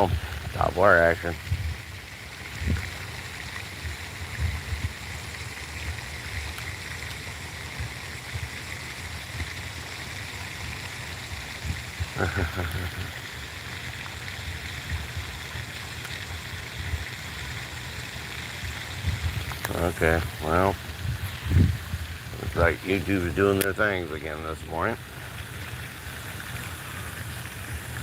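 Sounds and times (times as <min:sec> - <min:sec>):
rushing outdoor noise: 0:00.0 - 0:28.0
short vocal sound: 0:12.2 - 0:13.1
low rumbles: 0:18.7 - 0:25.0.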